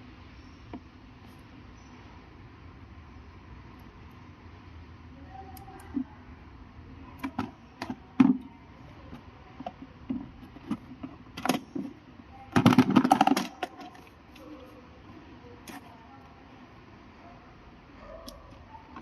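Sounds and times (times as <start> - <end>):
clicks and knocks of objects: 7.2 - 14.7
rapid rattle: 9.1 - 14.1.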